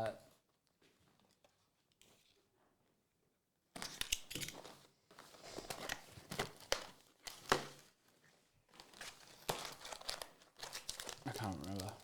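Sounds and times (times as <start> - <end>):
card packaging crinkling and tearing: 8.8 - 12.0.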